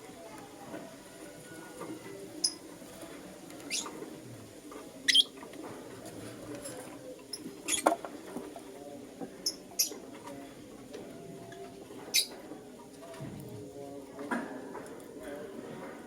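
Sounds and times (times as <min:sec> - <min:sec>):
lovebirds chirping: 0:03.6 - 0:04.0, 0:05.0 - 0:05.3, 0:07.3 - 0:07.9, 0:09.4 - 0:10.0, 0:12.0 - 0:12.4.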